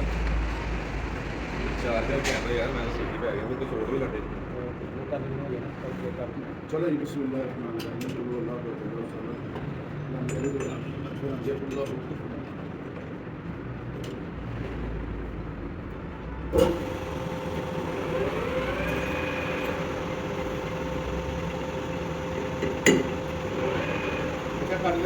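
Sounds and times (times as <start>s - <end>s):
machine humming and whining: 16.5s - 25.0s.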